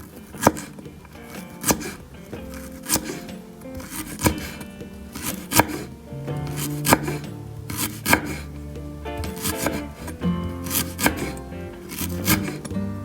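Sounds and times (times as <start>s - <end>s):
background music with held notes: 0.0s - 13.0s.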